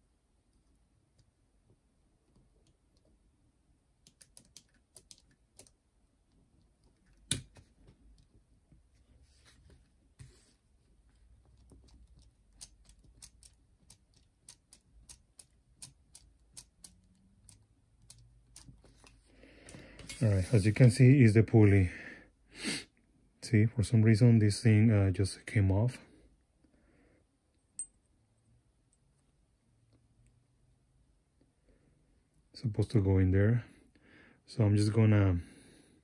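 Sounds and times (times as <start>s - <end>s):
small parts clicking and tapping: 4.0s - 8.4s, 11.2s - 20.2s.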